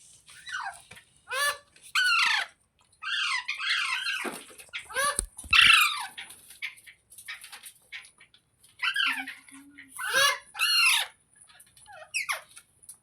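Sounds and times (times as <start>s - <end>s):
parrot squawking: 1.3s - 6.2s, 8.8s - 11.1s.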